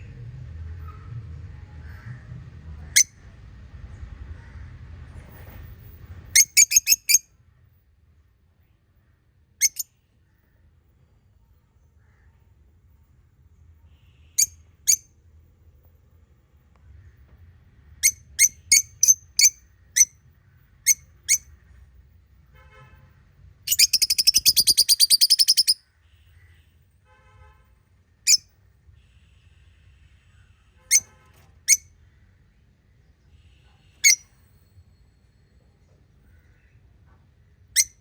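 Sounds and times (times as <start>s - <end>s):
parrots chirping and trilling: 6.3s - 7.2s, 9.6s - 9.8s, 18.0s - 20.1s, 23.7s - 25.8s, 30.9s - 31.8s, 34.0s - 34.4s, 37.8s - 38.0s.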